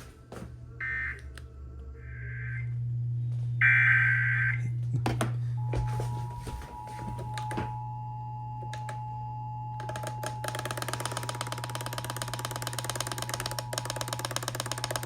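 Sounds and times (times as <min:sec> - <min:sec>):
low hum: 0:00.0 - 0:15.0
fast run of clicks: 0:09.8 - 0:15.0.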